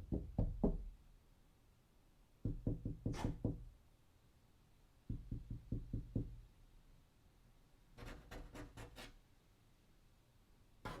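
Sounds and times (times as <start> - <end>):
sharp knock on a door: 0.0 - 0.9, 2.4 - 3.7, 5.1 - 6.4.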